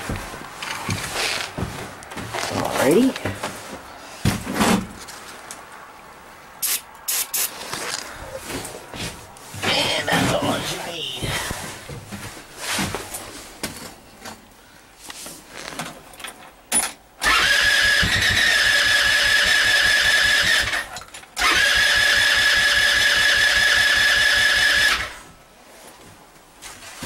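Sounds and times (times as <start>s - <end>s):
small engine cranking: 17.2s - 25.2s.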